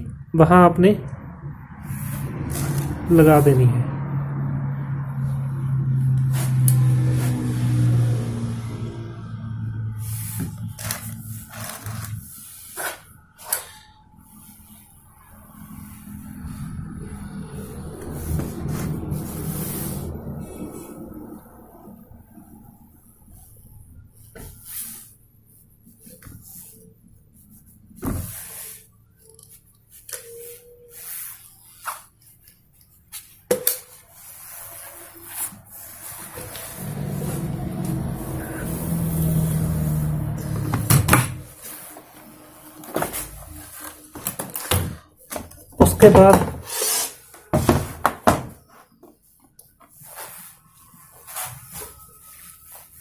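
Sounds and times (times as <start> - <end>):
low hum: 3.7 - 24.3, 35.9 - 41.6.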